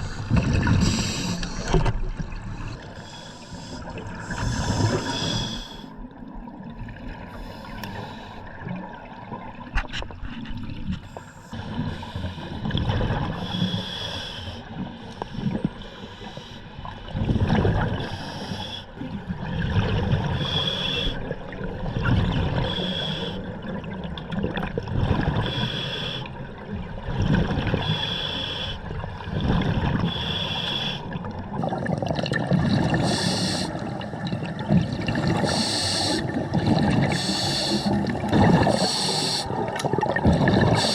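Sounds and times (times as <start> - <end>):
diver breathing through regulator: 0.0 - 1.9, 2.6 - 6.0, 13.3 - 16.8, 18.0 - 19.0, 20.3 - 21.2, 22.6 - 23.5, 25.2 - 26.4, 27.8 - 28.9, 29.8 - 31.2, 32.6 - 34.2, 35.1 - 40.9
gurgling exhaled bubbles: 0.0 - 9.8, 17.0 - 18.3, 19.0 - 28.1, 28.8 - 40.9.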